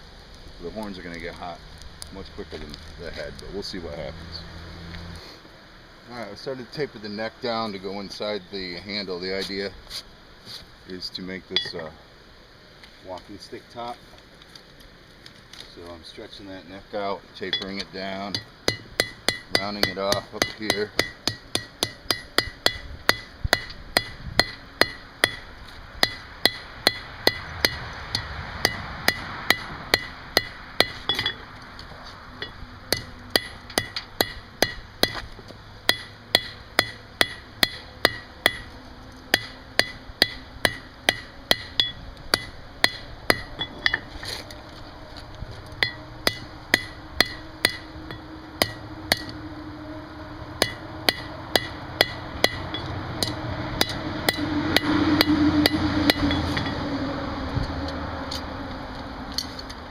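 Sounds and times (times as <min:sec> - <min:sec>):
hammer striking steel on anvil: 0:17.5 - 0:31.4, 0:32.4 - 0:35.2, 0:35.9 - 0:38.7, 0:39.3 - 0:44.1, 0:45.8 - 0:49.5, 0:50.6 - 0:56.8.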